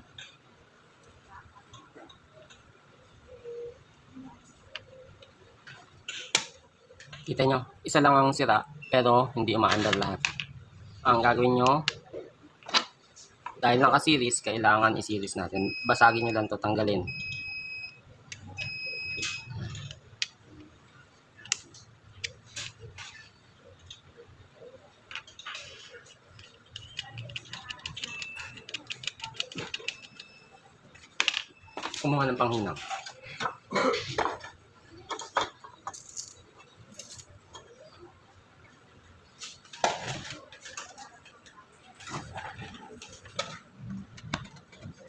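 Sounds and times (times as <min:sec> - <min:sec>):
electronic beep: 0:08.6 - 0:09.4, 0:15.5 - 0:19.9, 0:27.9 - 0:30.7, 0:31.4 - 0:33.3
small tools rustling and clicking: 0:32.7 - 0:37.9.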